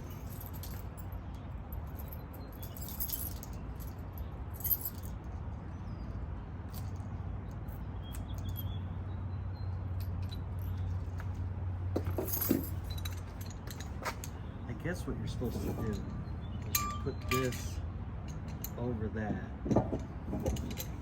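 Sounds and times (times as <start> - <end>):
hitch mount rattling metallic clicks: 15.5 - 21.0.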